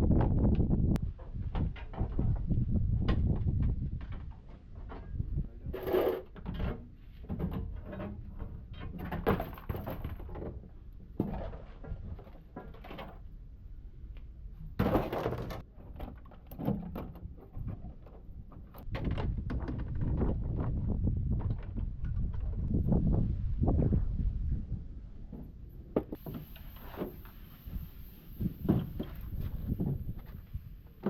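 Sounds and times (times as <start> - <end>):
low rumble: 19.9 - 25.3.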